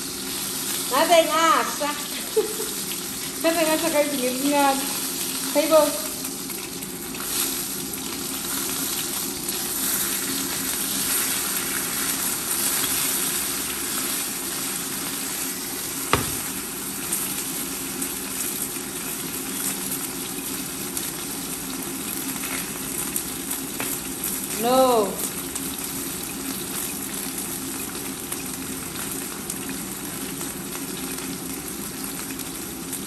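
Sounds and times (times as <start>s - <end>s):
chicken frying in hot oil: 0.0s - 33.0s
sharp knock: 16.1s - 16.5s.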